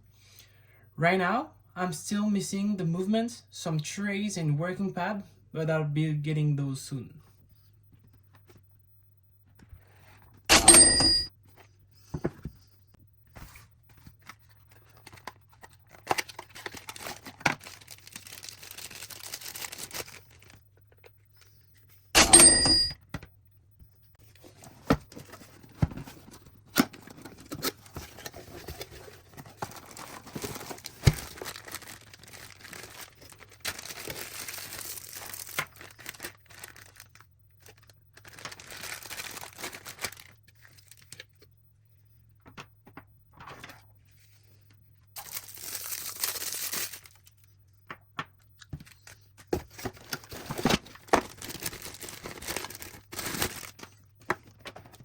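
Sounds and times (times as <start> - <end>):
packaging crinkling and tearing: 14.2 - 20.6, 25.1 - 41.4, 45.2 - 47.5, 48.8 - 54.6.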